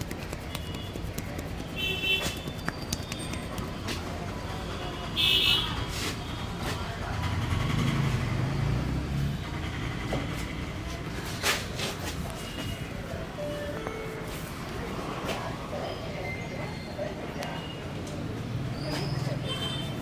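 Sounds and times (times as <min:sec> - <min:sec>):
passing vehicle rumble: 0:06.5 - 0:11.4.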